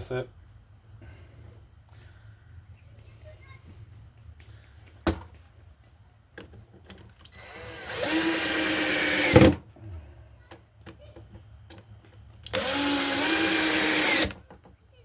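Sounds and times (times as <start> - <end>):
power drill driving screw into wood: 7.3 - 9.6, 12.5 - 14.4.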